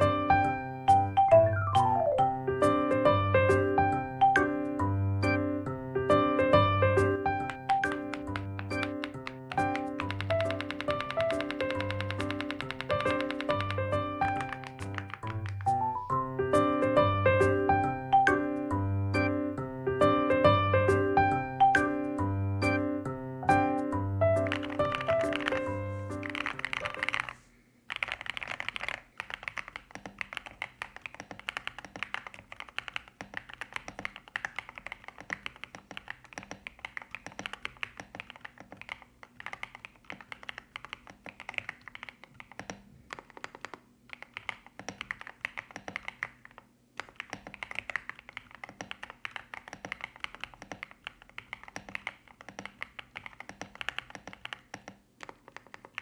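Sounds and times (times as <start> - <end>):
mechanical keyboard typing: 7.0 - 16.1, 24.4 - 56.0.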